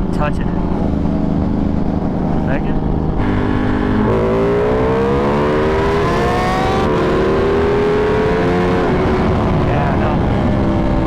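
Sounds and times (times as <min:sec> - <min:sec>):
motorcycle engine accelerating: 0:00.0 - 0:11.0.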